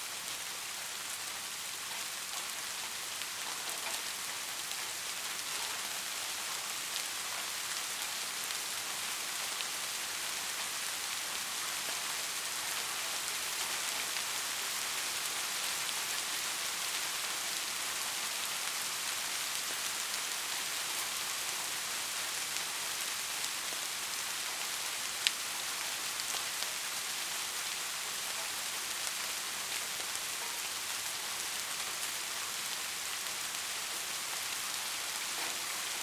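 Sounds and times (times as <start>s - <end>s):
steady rain hiss: 0.0s - 36.0s
raindrop ticks: 1.9s - 9.7s, 28.1s - 31.3s.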